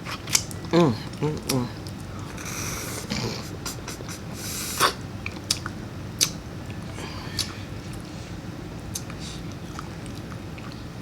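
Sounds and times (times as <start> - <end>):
person chewing and smacking food: 0.0 - 8.2, 8.8 - 10.9
sharp mouth clicks: 4.7 - 6.4, 7.4 - 8.0, 8.9 - 10.8.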